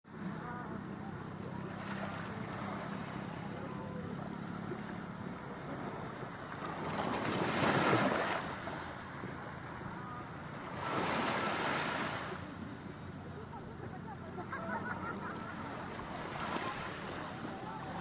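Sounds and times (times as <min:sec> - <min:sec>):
sea waves washing onto shore: 0:06.0 - 0:13.2, 0:14.4 - 0:18.0.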